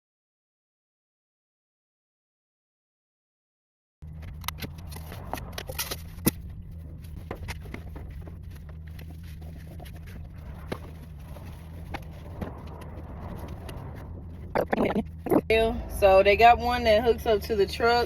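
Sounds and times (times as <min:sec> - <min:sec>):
steady low hum: 0:04.0 - 0:18.0.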